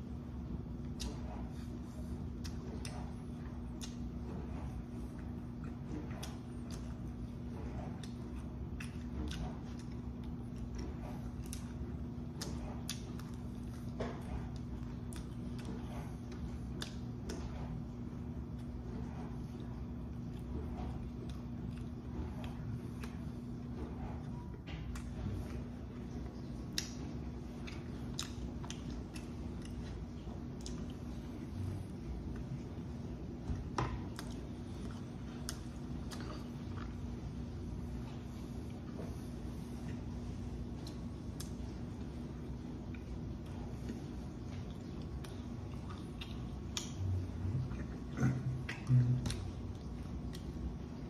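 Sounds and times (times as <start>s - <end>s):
low hum: 0.0s - 51.0s
person chewing food: 0.0s - 51.0s.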